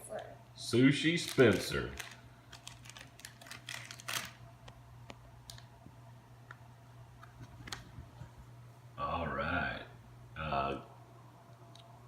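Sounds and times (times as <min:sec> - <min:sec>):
plastic toy and wrapper rustling: 0:01.1 - 0:04.4.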